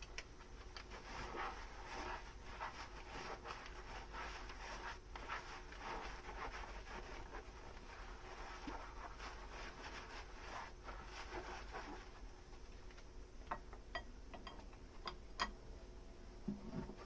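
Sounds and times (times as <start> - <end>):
sponge scrubbing dishes: 0.8 - 12.2.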